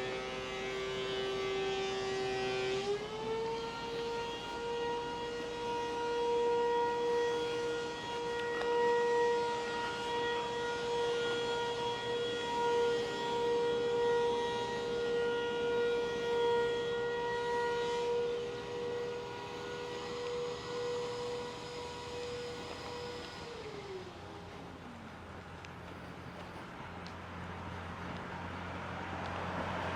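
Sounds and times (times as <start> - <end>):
siren steady tone: 0.0 - 25.4.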